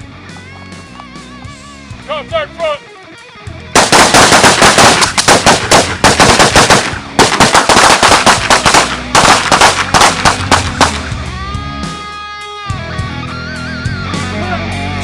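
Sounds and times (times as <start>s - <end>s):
rifle and pistol gunfire: 3.8s - 11.2s.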